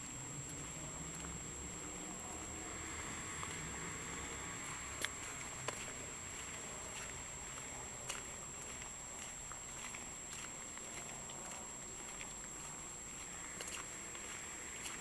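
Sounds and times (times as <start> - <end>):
faint high-pitched whine: 0.0 - 15.0.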